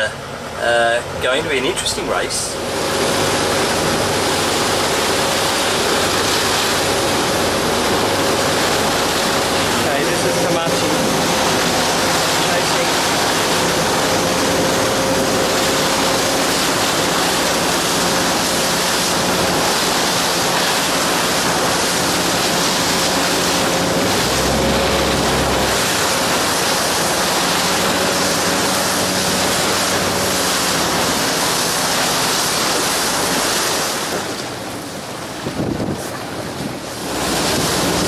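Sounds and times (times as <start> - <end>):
faint engine hum: 0.0 - 38.0
water and wind rushing: 0.0 - 38.0
low rumble: 21.3 - 31.7.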